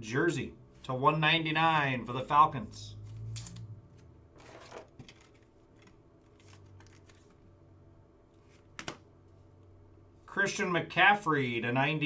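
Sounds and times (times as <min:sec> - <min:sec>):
trading cards rustling and sliding: 0:03.0 - 0:07.4.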